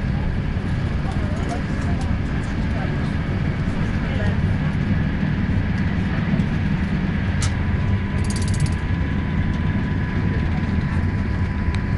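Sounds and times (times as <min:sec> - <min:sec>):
railway carriage rumbling: 0:00.0 - 0:11.9
rapid ticking: 0:08.2 - 0:08.8.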